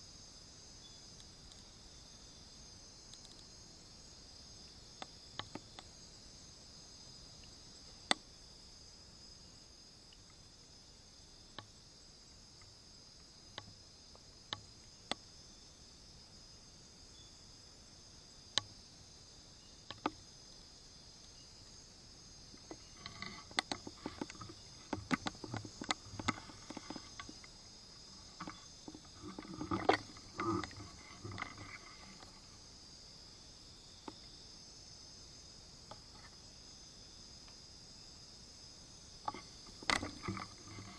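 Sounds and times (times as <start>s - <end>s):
shrill forest insect chorus: 0.0s - 40.9s
rustles and knocks: 22.6s - 32.6s, 39.2s - 40.9s.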